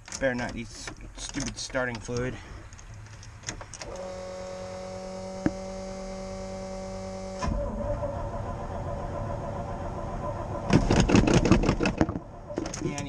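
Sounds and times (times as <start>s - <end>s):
steady electrical hum: 3.7s - 13.0s.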